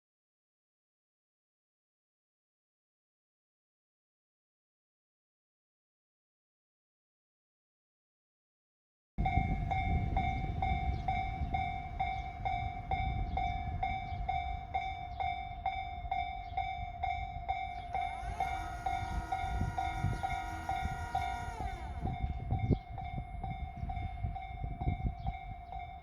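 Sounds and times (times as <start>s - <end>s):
level crossing warning bell: 9.2s - 26.0s
train horn: 17.8s - 22.6s.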